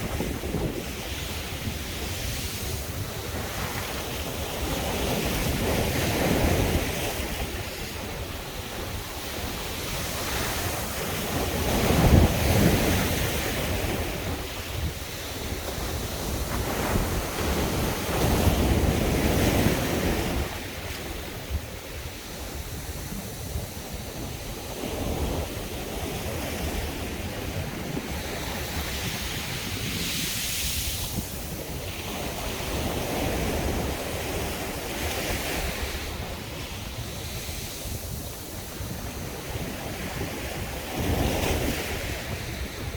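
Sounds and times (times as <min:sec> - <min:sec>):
sea waves breaking on beach: 0:00.0 - 0:42.9
wind rumble on microphone: 0:00.0 - 0:42.9.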